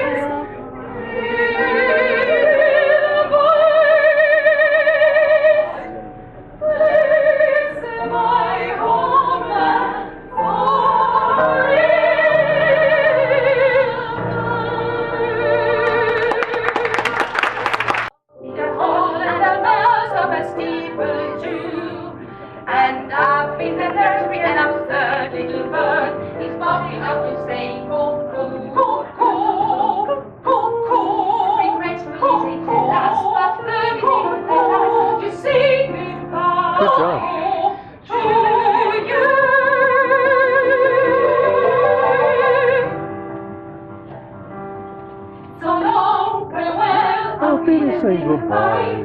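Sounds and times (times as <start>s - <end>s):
instrumental accompaniment: 18.4s - 49.0s.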